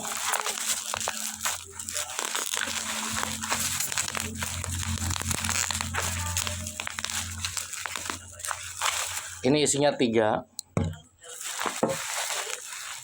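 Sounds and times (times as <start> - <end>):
plastic packaging crinkling: 0.0 - 9.5, 11.2 - 13.0
steady low hum: 2.6 - 9.7.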